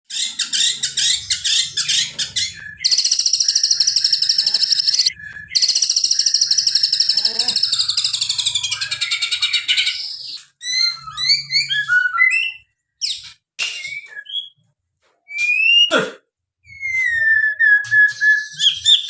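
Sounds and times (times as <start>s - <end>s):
songbird trilling and whistling: 0.1s - 14.6s, 16.7s - 19.0s.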